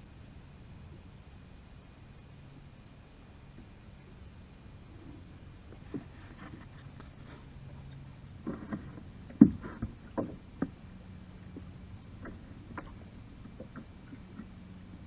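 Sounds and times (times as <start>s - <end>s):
faint low hum: 0.0s - 15.0s
kayak and paddle knocking: 8.4s - 10.8s, 11.5s - 14.5s.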